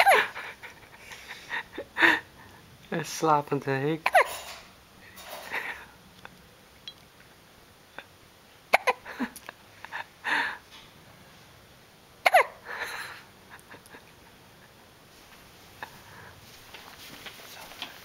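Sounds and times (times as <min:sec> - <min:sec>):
soft breath: 0:15.8 - 0:16.7.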